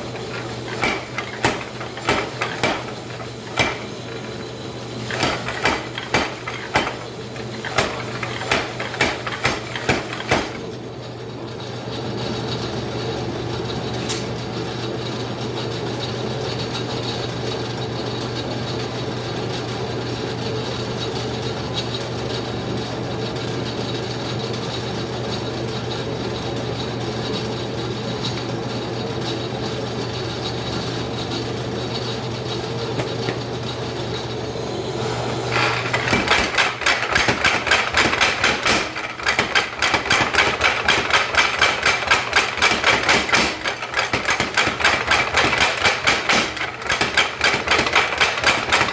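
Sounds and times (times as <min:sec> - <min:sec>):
mechanical rattle: 0:00.0 - 0:10.7, 0:35.5 - 0:48.9
power hammer blows: 0:00.0 - 0:10.7.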